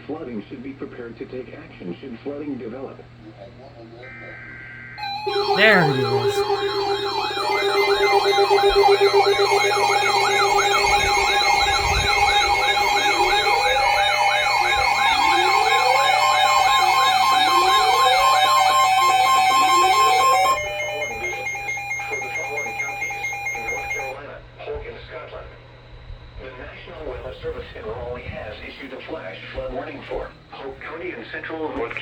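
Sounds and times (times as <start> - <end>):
rising whoop alarm: 5.0 - 24.1
steady warning tone: 5.0 - 24.2
warbling siren tones: 5.0 - 24.2.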